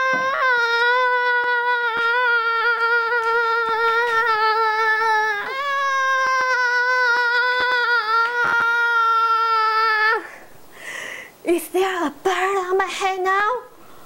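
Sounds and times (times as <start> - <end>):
person screaming: 0.0 - 10.3.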